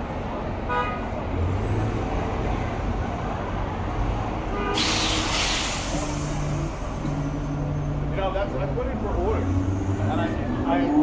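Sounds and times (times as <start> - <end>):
city street traffic rumble: 0.0 - 11.0
loud hiss: 4.8 - 6.6.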